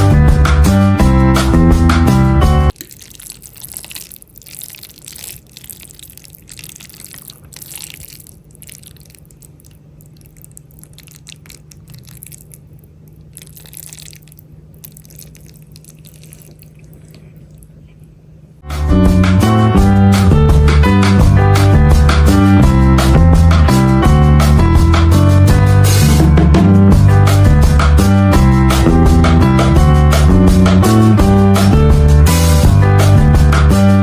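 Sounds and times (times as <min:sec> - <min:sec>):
wet clicks and liquid splashes: 0:02.7 - 0:17.7
low steady hum: 0:02.7 - 0:18.7.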